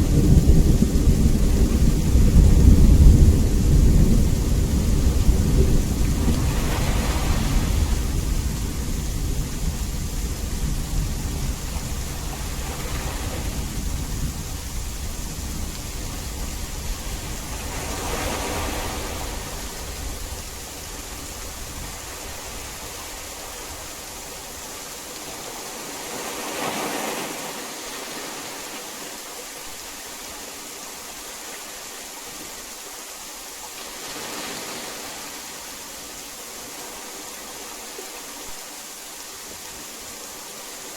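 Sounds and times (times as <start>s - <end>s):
thunder rumbling: 0.0s - 23.9s
heavy rain falling: 0.0s - 40.9s.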